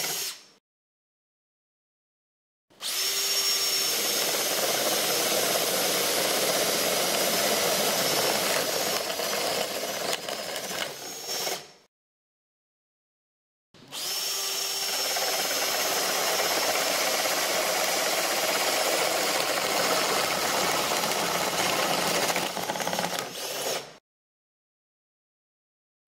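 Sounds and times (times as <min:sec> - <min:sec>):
power drill boring into wood: 0:00.0 - 0:00.5, 0:02.8 - 0:11.8, 0:13.9 - 0:24.0.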